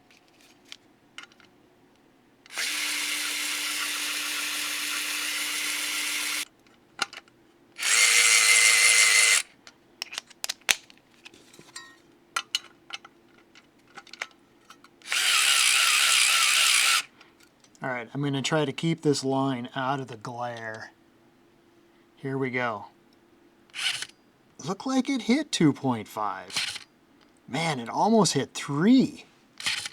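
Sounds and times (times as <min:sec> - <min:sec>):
electric screwdriver whining: 0:02.5 - 0:06.5, 0:07.8 - 0:09.5, 0:15.0 - 0:17.1, 0:23.7 - 0:24.1, 0:26.5 - 0:26.8, 0:29.6 - 0:29.9.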